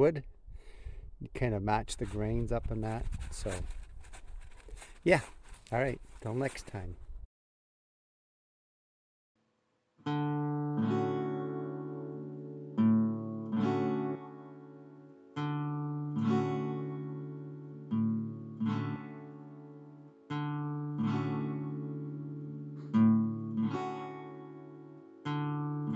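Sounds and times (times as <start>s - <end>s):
acoustic guitar strummed chords: 10.0s - 25.9s.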